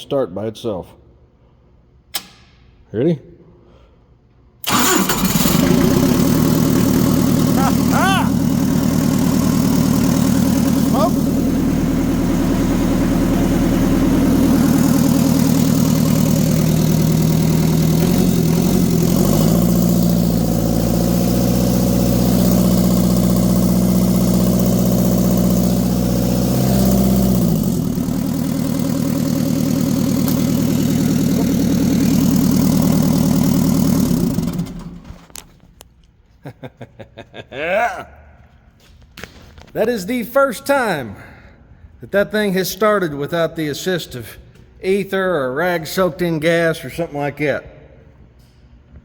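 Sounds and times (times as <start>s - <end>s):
diesel engine idling and revving: 4.7s - 35.3s.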